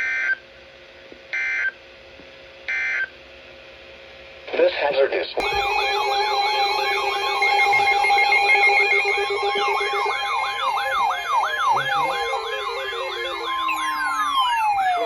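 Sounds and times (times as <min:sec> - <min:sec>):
fast siren yelp: 0:05.4 - 0:15.0
sirens gliding down in pitch: 0:05.4 - 0:15.0
steady alarm tone: 0:05.4 - 0:15.0.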